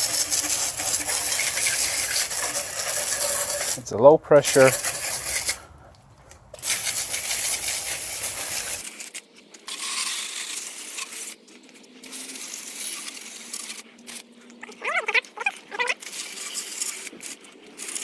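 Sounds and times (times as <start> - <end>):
hose spraying water on bike: 0.0 - 3.8, 6.6 - 8.8.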